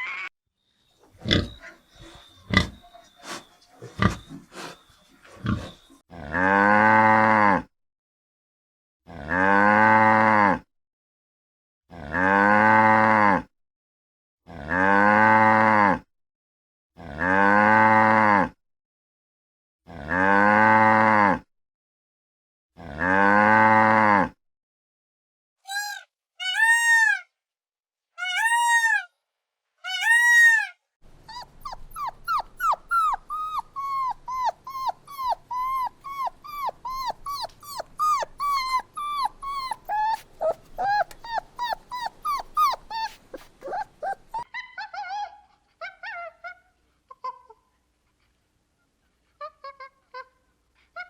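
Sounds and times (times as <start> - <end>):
dog yipping and whimpering: 1.2 - 4.8, 5.4 - 6.0, 31.2 - 47.4
cow mooing: 5.4 - 7.7, 9.1 - 10.6, 20.0 - 21.4, 22.8 - 24.3
dog whining and howling: 31.2 - 46.5.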